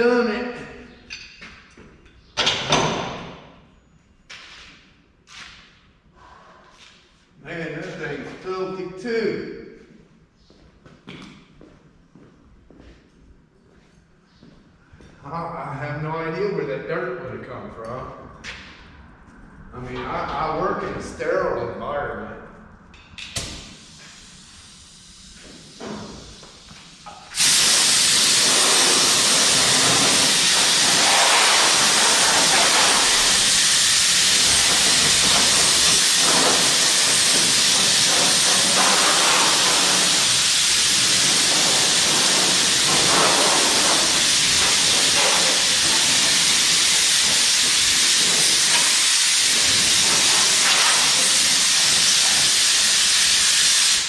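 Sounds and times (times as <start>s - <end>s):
air blow gun hissing: 23.5s - 54.0s.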